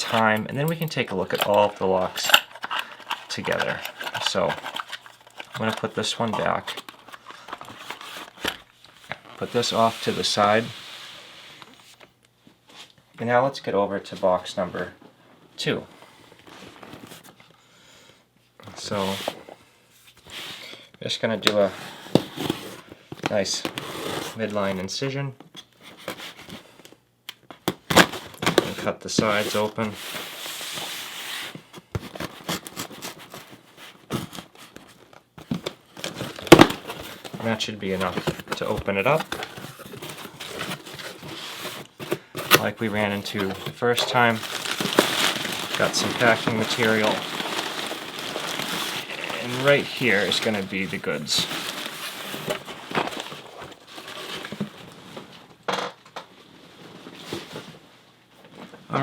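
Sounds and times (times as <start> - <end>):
cardboard being handled: 27.9 - 55.3.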